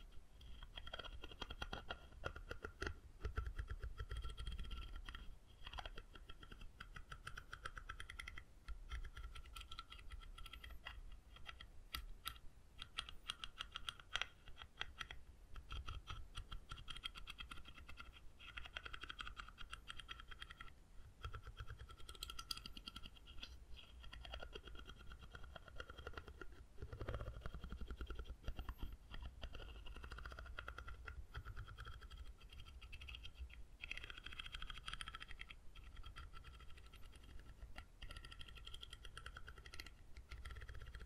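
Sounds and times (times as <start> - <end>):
rapid tapping on wood: 24.1 - 41.0.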